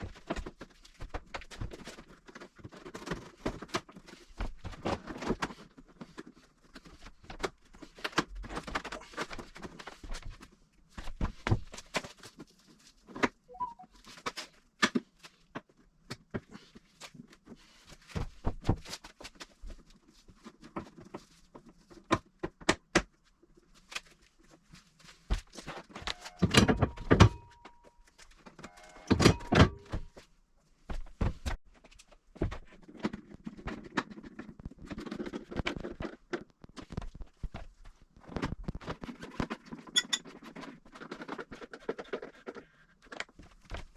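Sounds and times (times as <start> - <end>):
brief squeak: 13.5 - 13.9, 28.6 - 30.1.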